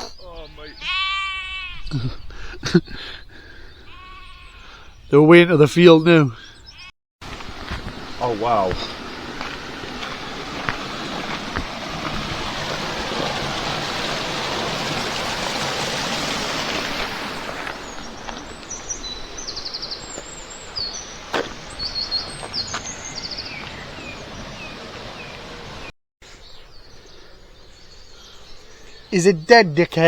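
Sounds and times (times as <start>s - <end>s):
birds singing: 0.0s - 30.0s.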